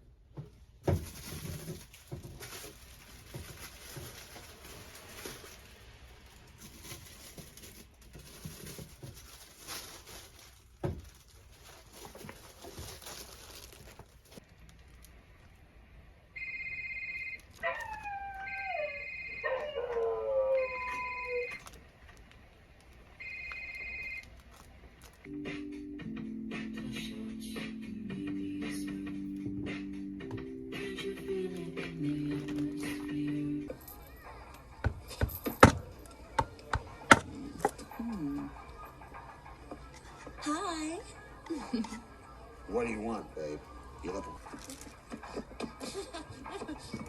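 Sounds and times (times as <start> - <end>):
soft rustling: 0.4 - 15.6
electronic ringing tone: 16.4 - 17.4, 23.2 - 24.2
dog howling: 17.6 - 21.5.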